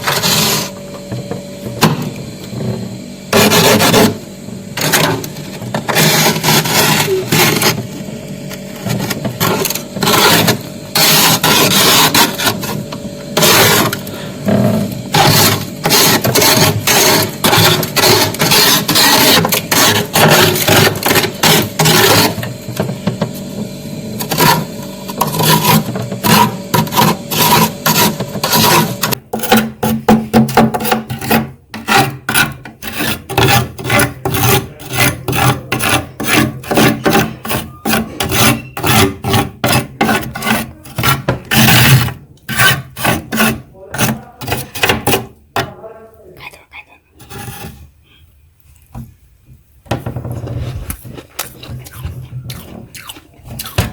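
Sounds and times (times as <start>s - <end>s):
frost being scraped: 0.0s - 0.8s, 5.8s - 7.8s, 8.8s - 14.3s, 15.1s - 22.4s, 24.3s - 45.3s, 47.2s - 47.9s, 50.4s - 53.9s.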